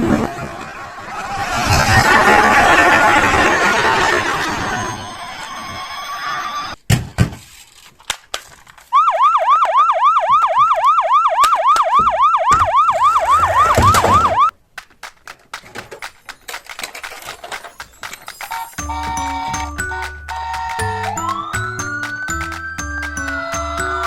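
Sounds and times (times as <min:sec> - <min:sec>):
toy siren yelping: 0:09.0 - 0:14.5, 0:18.4 - 0:24.0
sharp clicks and knocks: 0:14.7 - 0:19.2.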